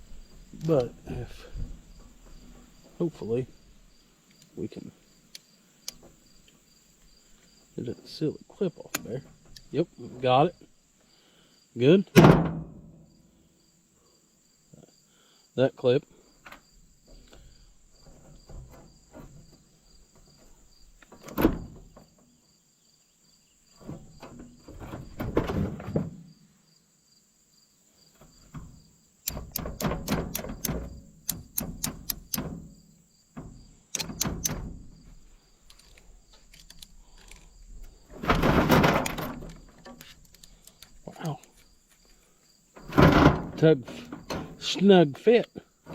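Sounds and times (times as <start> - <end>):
crickets chirping: 0.0 - 45.9
sharp clicks: 29.2 - 32.6, 33.9 - 34.7, 35.7 - 37.5.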